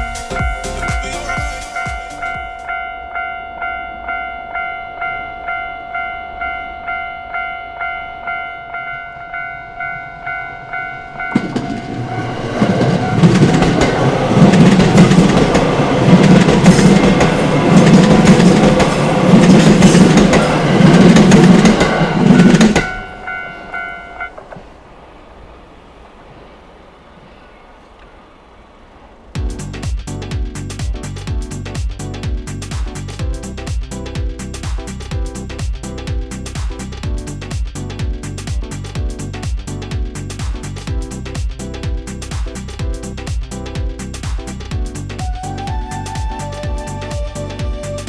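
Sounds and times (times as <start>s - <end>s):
level crossing warning bell ringing: 0.0s - 24.5s
train wheels clattering over rail joints: 11.2s - 24.9s.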